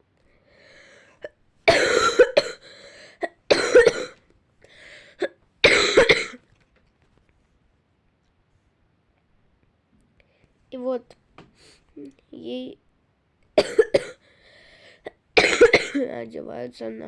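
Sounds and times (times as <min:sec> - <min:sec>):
girl coughing: 0:01.7 - 0:04.2, 0:05.2 - 0:06.4, 0:13.6 - 0:14.2, 0:14.9 - 0:16.1.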